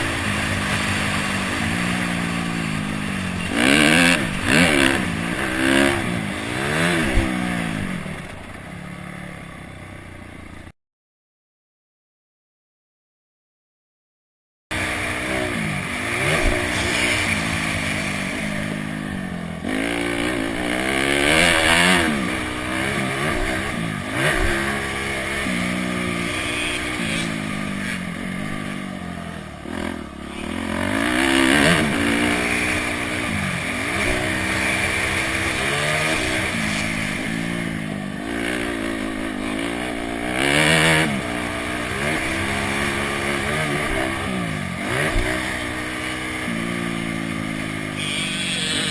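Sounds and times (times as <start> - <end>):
motorcycle engine revving: 0.0 - 10.7, 14.7 - 48.9.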